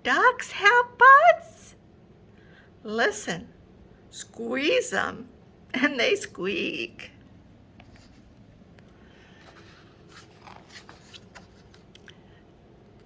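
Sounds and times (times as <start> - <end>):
paper rustling: 7.8 - 12.1.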